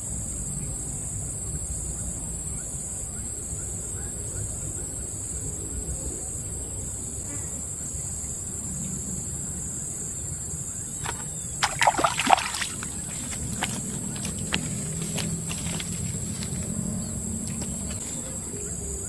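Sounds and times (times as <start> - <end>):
outdoor background noise: 0.0 - 19.0
water splashing: 11.0 - 16.3.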